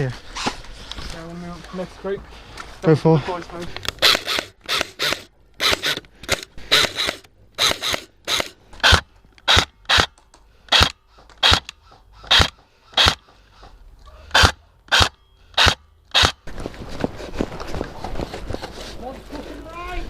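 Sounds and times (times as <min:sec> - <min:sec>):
footsteps crunching on rough ground: 0:16.4 - 0:20.0.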